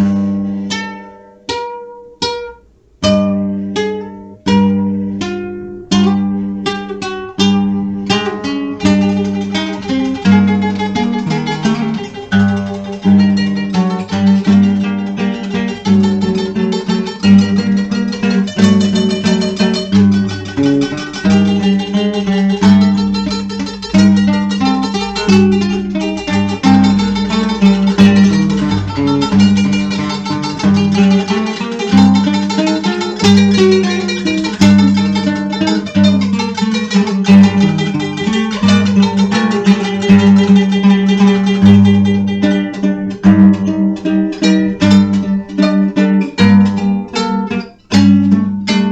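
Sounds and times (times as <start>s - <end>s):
picked string notes: 0.0s - 48.9s
low held note: 2.2s - 16.6s, 17.3s - 36.0s.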